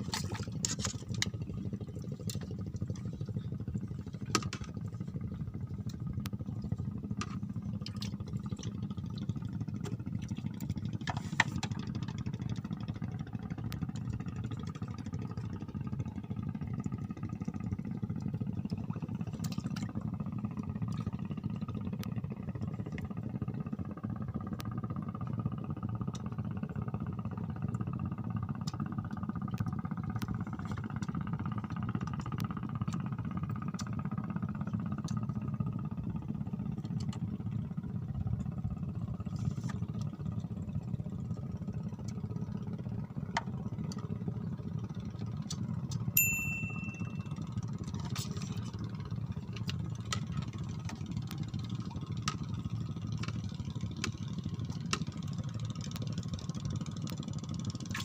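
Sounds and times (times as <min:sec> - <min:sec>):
low engine-like drone: 0:00.0 - 0:58.0
short high beep: 0:46.2 - 0:47.2.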